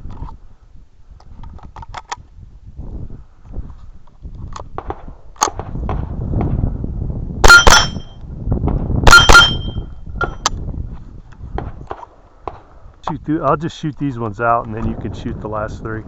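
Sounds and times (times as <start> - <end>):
rifle gunshots: 7.4 - 8.1, 9.0 - 9.8
steel plate target ringing: 7.4 - 8.2, 9.1 - 10.5.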